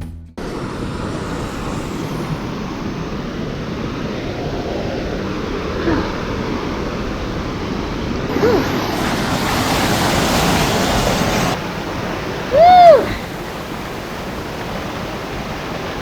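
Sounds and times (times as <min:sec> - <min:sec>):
waterfall rushing: 0:00.4 - 0:16.0
rising and falling cry: 0:08.3 - 0:09.4, 0:12.5 - 0:13.4.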